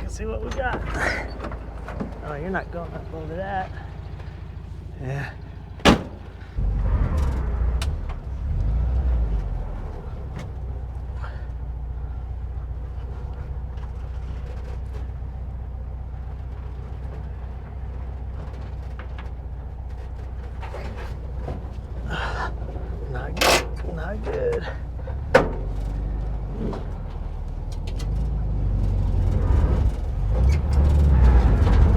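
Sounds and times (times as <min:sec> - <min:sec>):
engine idling: 0:00.0 - 0:31.9
low rumble: 0:05.7 - 0:18.4.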